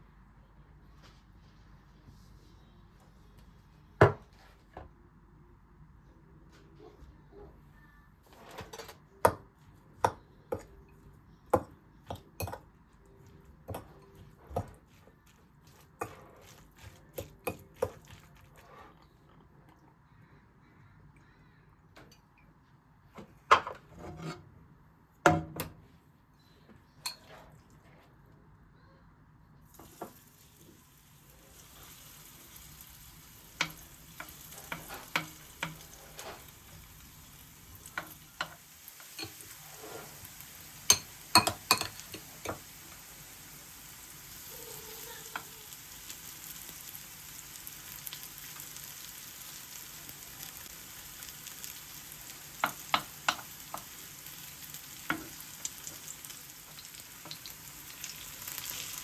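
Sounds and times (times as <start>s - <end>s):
food sizzling in oil: 29.7s - 59.0s.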